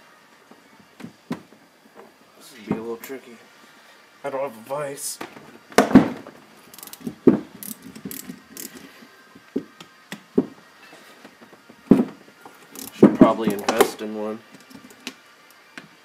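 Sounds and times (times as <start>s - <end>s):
socket ratchet clicking: 6.7s - 8.8s, 12.7s - 13.0s.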